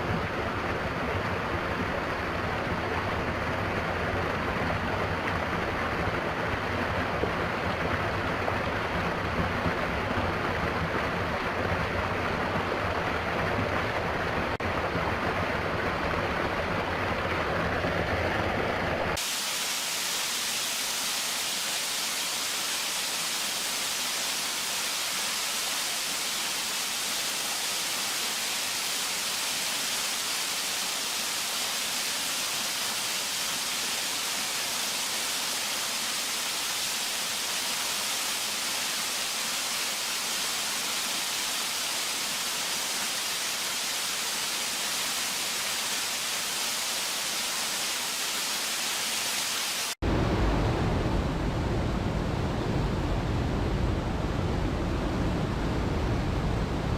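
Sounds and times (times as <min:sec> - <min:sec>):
waterfall rushing: 0:00.0 - 0:51.6
deeper water rushing: 0:00.0 - 0:56.9.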